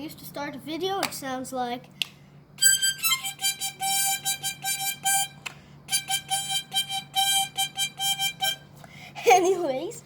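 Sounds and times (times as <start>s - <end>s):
accordion short notes: 2.6s - 8.7s.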